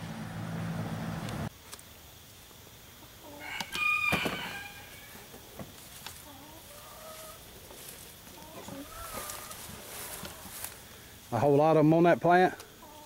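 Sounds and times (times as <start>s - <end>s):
rooster crowing: 3.3s - 5.3s, 8.8s - 9.7s.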